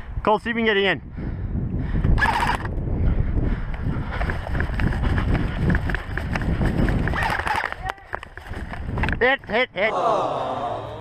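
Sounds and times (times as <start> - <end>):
wind rumble on microphone: 0.0 - 9.5
footsteps on rocky dirt: 3.8 - 9.2.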